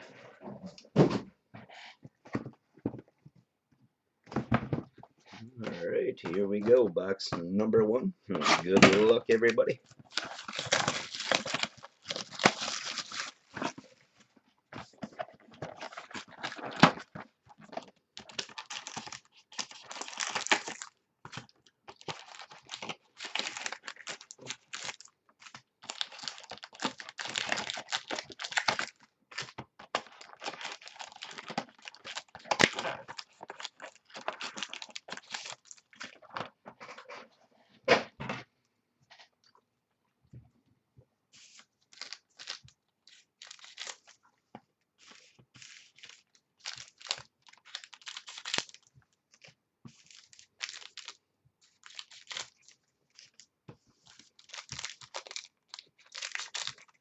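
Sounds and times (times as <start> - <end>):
plastic wrapping crinkling and tearing: 8.4 - 14.1, 14.8 - 37.1, 41.4 - 44.2, 45.0 - 57.0.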